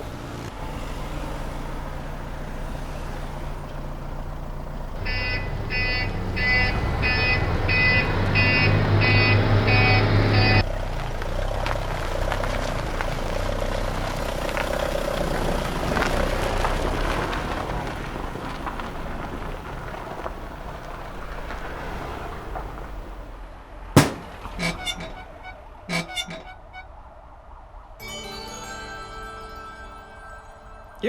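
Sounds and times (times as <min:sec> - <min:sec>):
vehicle running: 0:00.0 - 0:27.3
sharp crack: 0:24.0 - 0:25.2
bright chiming notes: 0:28.0 - 0:31.0.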